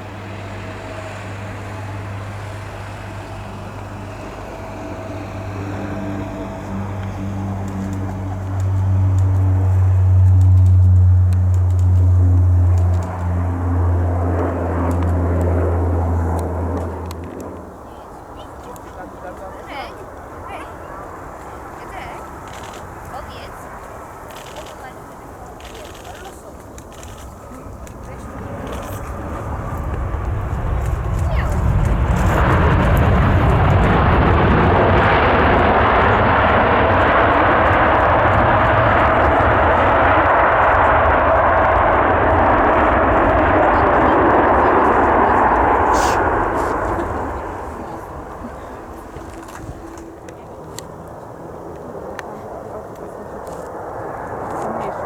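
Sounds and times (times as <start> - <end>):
faint steady whine: 0.0 - 33.6
jet airliner passing: 0.0 - 55.0.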